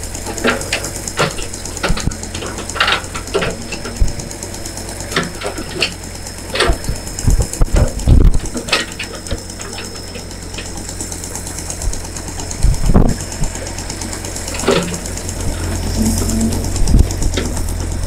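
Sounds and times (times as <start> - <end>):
machine humming: 0.1 - 7.4, 11.9 - 18.0.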